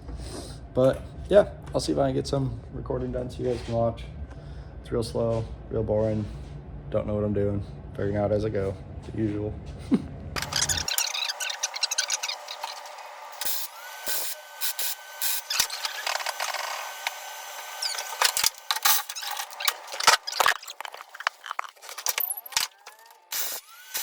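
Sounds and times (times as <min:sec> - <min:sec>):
power tool whining: 0:10.4 - 0:24.0.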